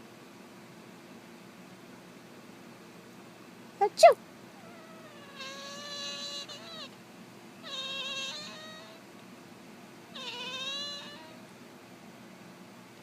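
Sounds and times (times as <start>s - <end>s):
cat meowing: 4.6s - 6.9s, 7.6s - 9.0s, 10.2s - 11.4s.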